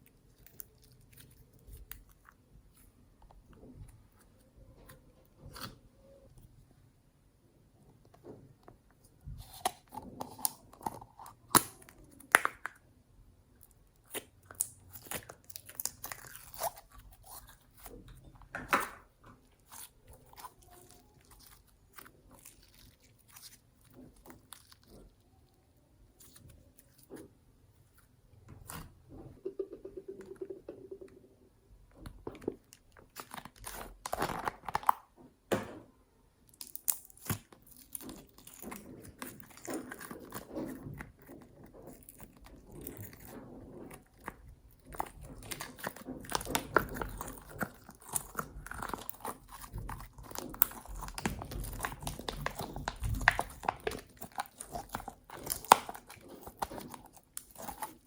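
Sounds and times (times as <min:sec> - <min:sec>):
slime squished by hand: 0:13.6 - 0:25.4, 0:36.4 - 0:58.0.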